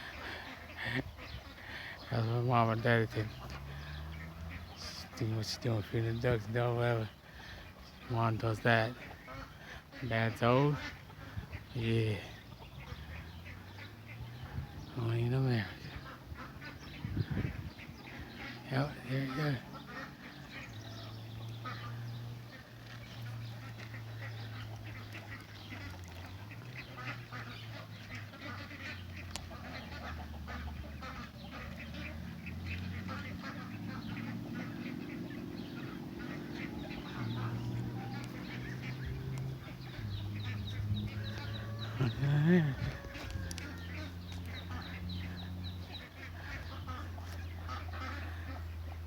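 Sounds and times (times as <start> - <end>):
ducks quacking: 0.0 - 49.0.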